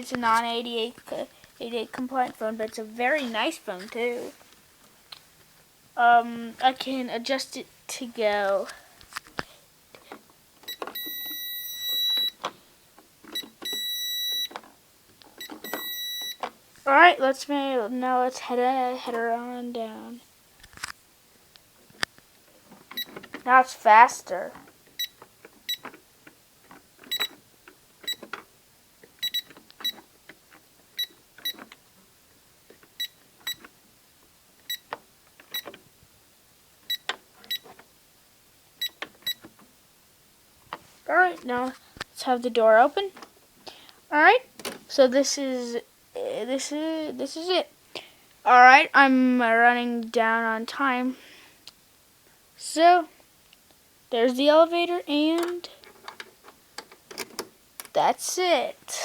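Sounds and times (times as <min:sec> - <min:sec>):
cash register key beeps: 0:10.6 - 0:12.4, 0:13.3 - 0:14.6, 0:15.4 - 0:16.5, 0:22.9 - 0:23.3, 0:25.0 - 0:26.0, 0:27.0 - 0:27.4, 0:28.0 - 0:28.4, 0:29.2 - 0:30.1, 0:31.0 - 0:31.8, 0:33.0 - 0:33.7, 0:34.7 - 0:34.9, 0:35.5 - 0:35.8, 0:36.9 - 0:37.8, 0:38.8 - 0:39.5
cash register high beep: 0:10.7 - 0:12.4, 0:13.4 - 0:14.6, 0:15.4 - 0:16.4, 0:27.1 - 0:27.4, 0:29.2 - 0:30.0
cash register keys clicking: 0:55.4 - 0:57.9.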